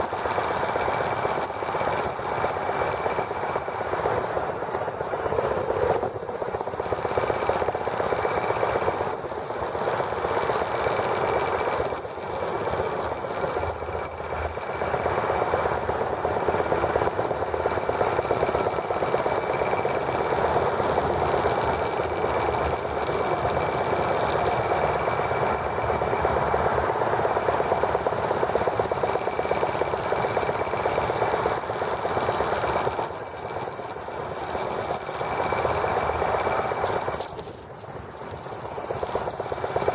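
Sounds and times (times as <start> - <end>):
miniature engine running fast: 0.0 - 39.9.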